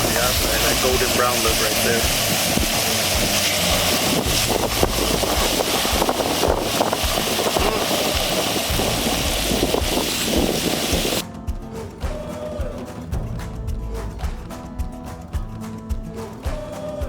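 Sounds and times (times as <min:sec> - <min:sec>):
chicken sizzling in a skillet: 0:00.0 - 0:11.2
wind rumble on microphone: 0:00.0 - 0:11.2.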